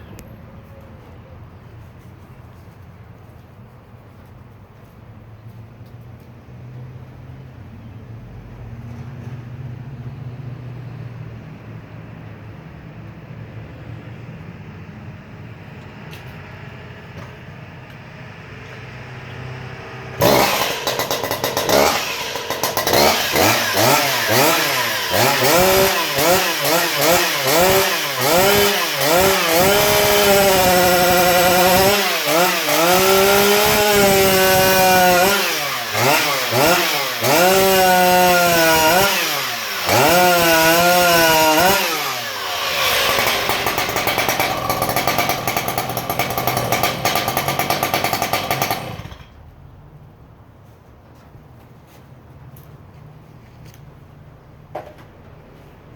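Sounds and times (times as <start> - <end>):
chainsaw idling and revving: 19.1 - 49.4.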